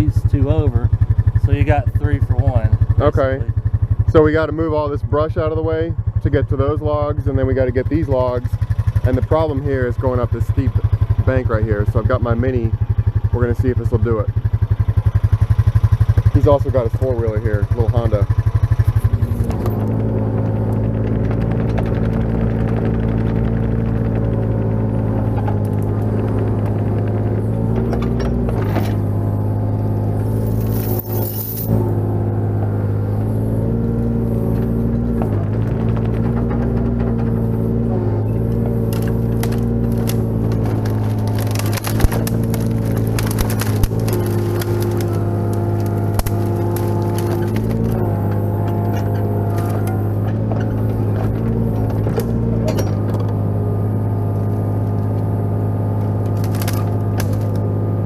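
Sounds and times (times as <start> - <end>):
excavator diesel engine running: 0.0 - 58.0
wood and brush cracking: 38.4 - 53.1, 56.2 - 57.7.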